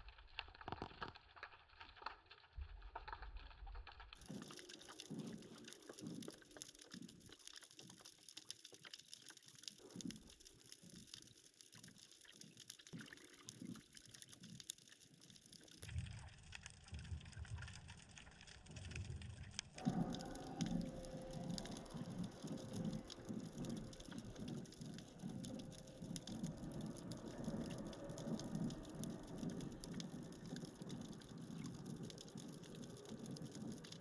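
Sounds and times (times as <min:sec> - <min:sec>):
fine crackling: 0:19.6 - 0:34.0.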